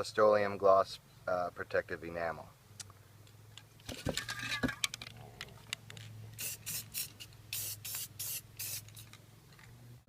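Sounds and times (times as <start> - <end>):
spray can clicks and rattles: 5.8 - 9.2
spray paint can hissing: 6.4 - 9.2.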